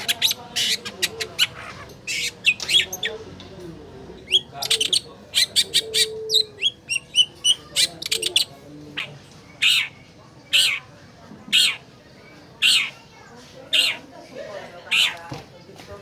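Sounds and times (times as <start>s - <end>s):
harsh rasping bird calls: 0.0s - 3.4s, 4.0s - 15.4s
bird chirping and whistling: 4.3s - 8.4s.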